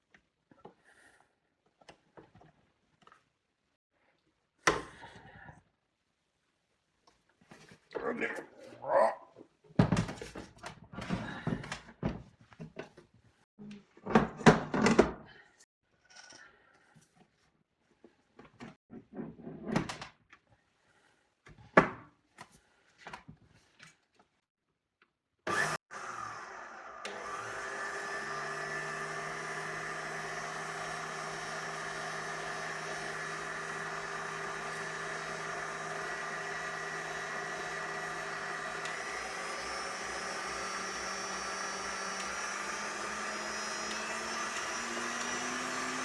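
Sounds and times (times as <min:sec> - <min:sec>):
stand mixer running with whine: 0:25.5 - 0:46.0.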